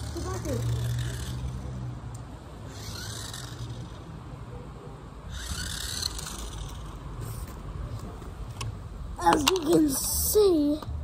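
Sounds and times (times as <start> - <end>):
toy car electric motor whirring: 0.0 - 4.2, 5.3 - 7.6, 9.2 - 10.8.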